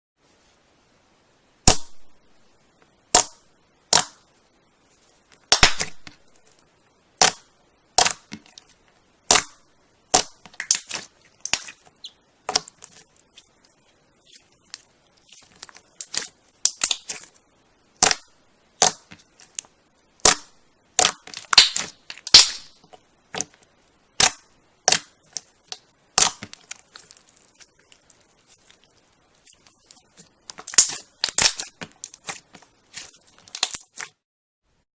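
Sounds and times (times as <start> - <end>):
slime popping and clicking: 16.0 - 17.3, 18.0 - 23.5, 24.2 - 28.0, 29.8 - 34.1.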